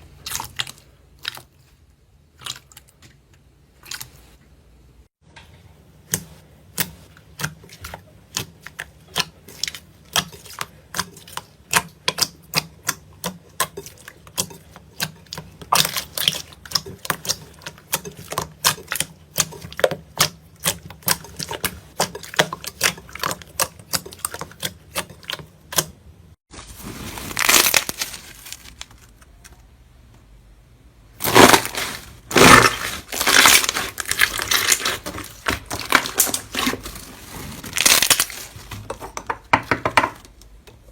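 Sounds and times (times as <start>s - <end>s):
slime crunchy crackling squishes: 26.5s - 29.2s, 31.2s - 38.9s.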